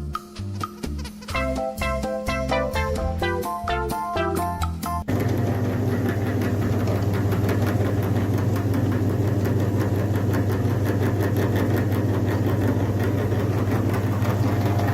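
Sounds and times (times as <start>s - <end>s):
electric grinder motor running: 5.1s - 14.9s.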